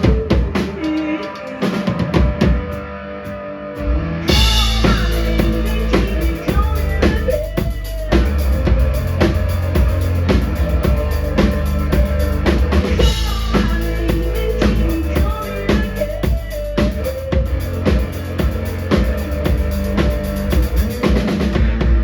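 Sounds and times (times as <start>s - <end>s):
bass drum and snare beat: 0.0s - 0.9s, 4.3s - 22.0s
live band playing: 4.3s - 21.6s.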